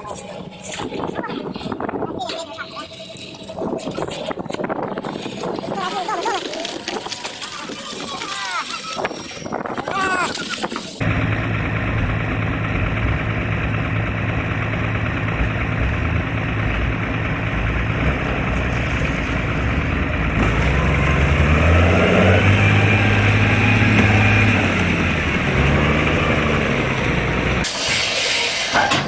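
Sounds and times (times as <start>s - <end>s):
diesel engine running and revving: 11.0s - 27.7s.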